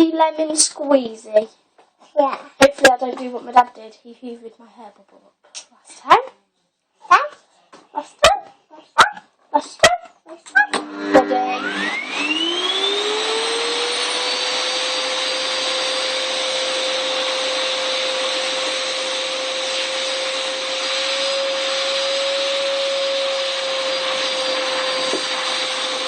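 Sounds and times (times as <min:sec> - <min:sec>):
vacuum cleaner running: 0:10.5 - 0:26.0.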